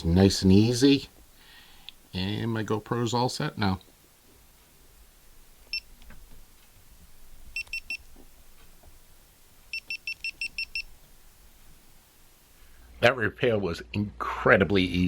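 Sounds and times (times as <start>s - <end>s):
camera beeping: 7.5s - 8.1s, 9.7s - 11.0s.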